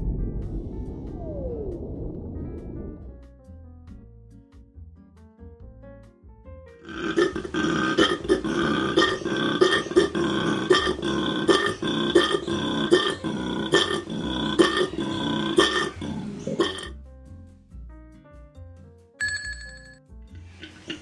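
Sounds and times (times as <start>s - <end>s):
faint background music: 0.0s - 21.0s
rough animal call with clicks: 6.9s - 16.9s.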